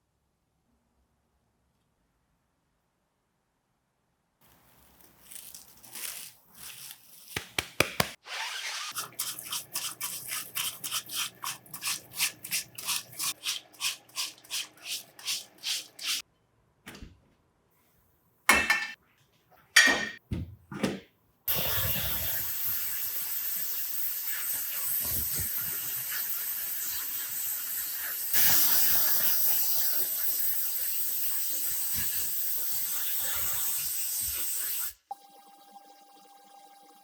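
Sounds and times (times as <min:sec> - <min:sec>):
spraying hiss: 0:21.5 - 0:35.0.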